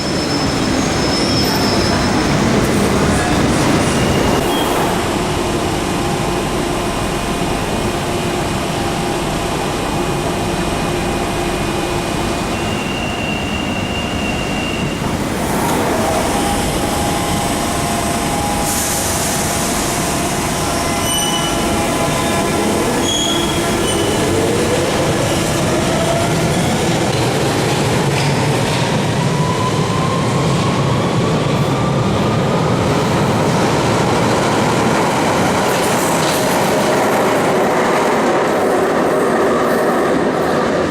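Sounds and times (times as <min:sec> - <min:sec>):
hiss of air: 0:18.5 - 0:20.6.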